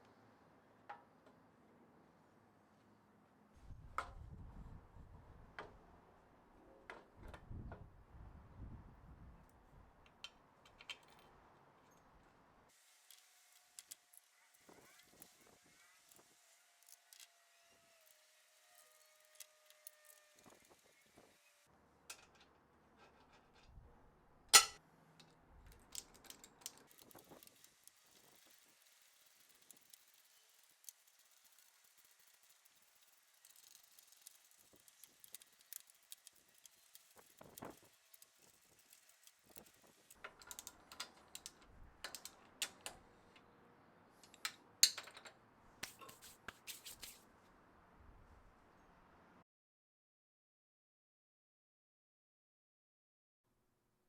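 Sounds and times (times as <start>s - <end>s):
hard objects clicking and tapping: 39.6s - 43.0s.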